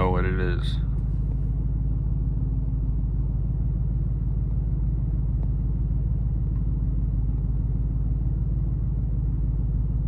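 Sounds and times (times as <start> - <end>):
road noise: 0.0 - 1.7
car engine rumble: 0.0 - 10.0.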